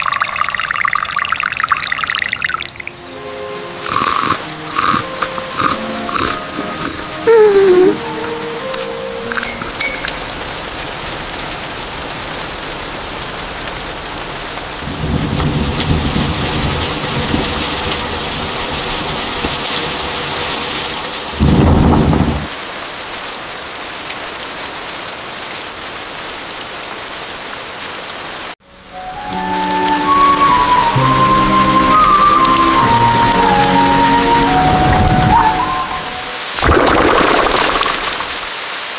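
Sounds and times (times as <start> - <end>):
heavy rain: 0.0 - 38.9
rolling thunder rumble: 14.8 - 19.2, 21.3 - 22.6
sharp thunderclap: 21.4 - 22.5.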